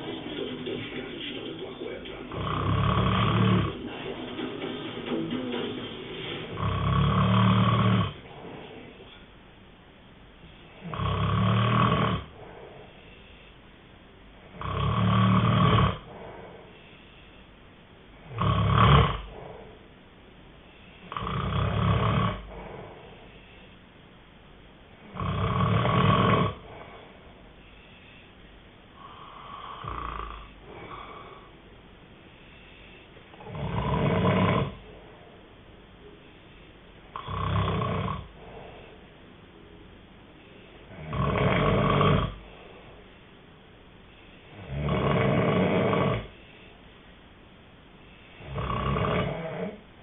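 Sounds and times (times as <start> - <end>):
quiet breaths: 0.0 - 50.0
person snoring loudly: 2.2 - 8.9, 10.8 - 12.7, 14.5 - 16.6, 18.2 - 19.7, 21.0 - 23.0, 25.0 - 27.0, 29.0 - 31.5, 33.3 - 34.9, 37.1 - 38.6, 40.9 - 42.5, 44.5 - 46.3, 48.4 - 49.8.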